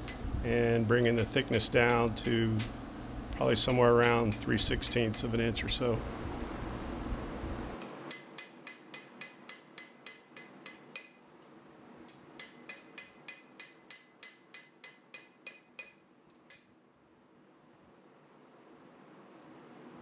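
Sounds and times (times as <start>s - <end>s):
hammer ringing on steel bar: 12.4s - 16.0s.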